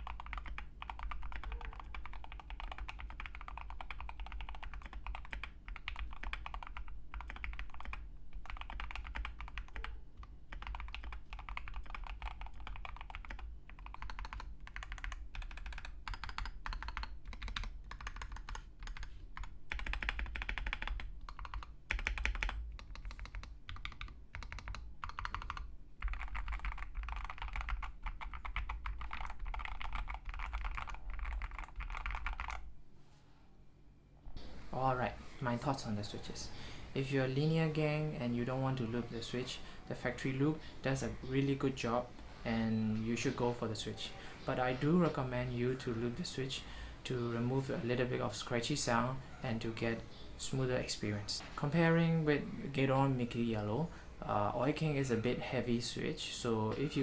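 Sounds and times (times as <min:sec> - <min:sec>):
mechanical keyboard typing: 0:00.0 - 0:32.6.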